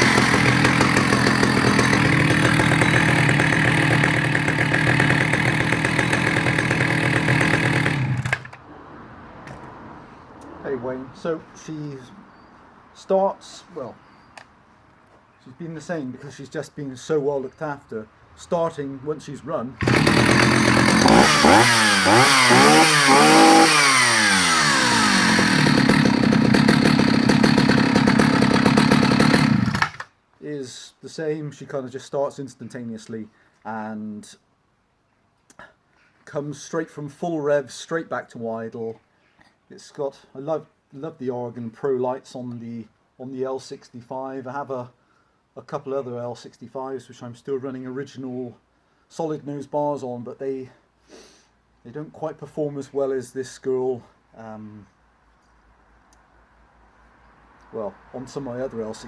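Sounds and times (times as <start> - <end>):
chainsaw idling: 0.0 - 8.6, 19.8 - 30.1.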